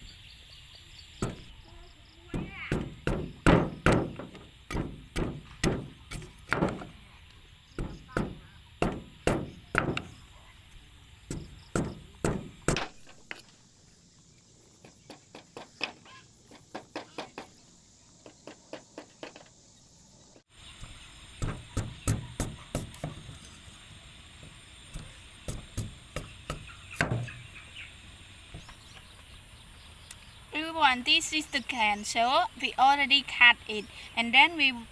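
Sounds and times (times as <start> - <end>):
knife chopping cane stalks: 2.3 - 6.9, 7.8 - 10.1, 11.3 - 13.5, 20.8 - 23.6, 24.4 - 27.5.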